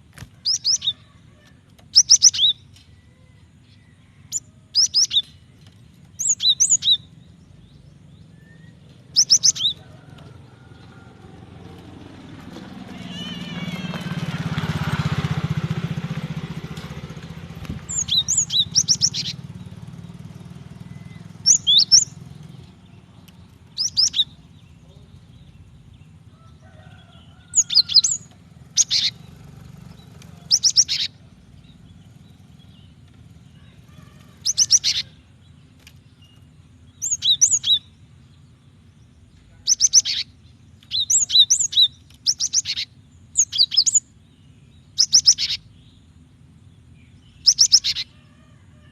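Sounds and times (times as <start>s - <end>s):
bird calling with high notes: 0.4s - 5.5s, 6.1s - 7.2s, 8.2s - 10.2s, 12.5s - 15.8s, 16.4s - 25.0s, 27.3s - 35.6s, 36.9s - 38.1s, 39.6s - 44.2s, 44.8s - 45.9s, 47.3s - 48.2s.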